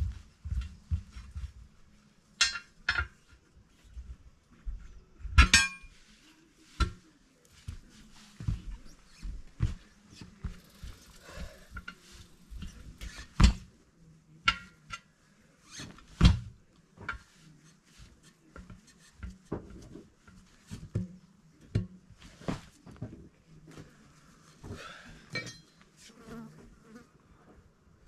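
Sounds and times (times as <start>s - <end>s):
ringing metal clink: 25.4s - 25.8s.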